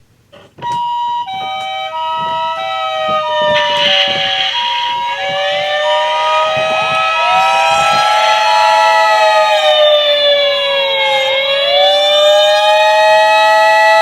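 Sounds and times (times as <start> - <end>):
two-tone siren: 0.6 - 14.0
gliding siren wail: 1.0 - 14.0
rising and falling siren: 1.3 - 14.0.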